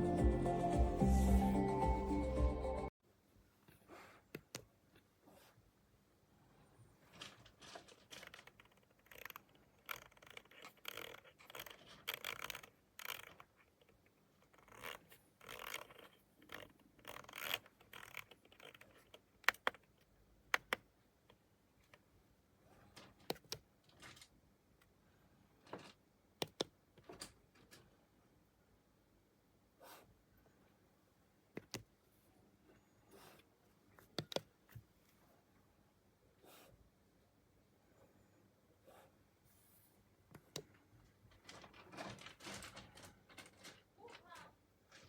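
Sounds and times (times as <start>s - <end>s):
hands rubbing and scraping controller: 7.6s - 20.8s.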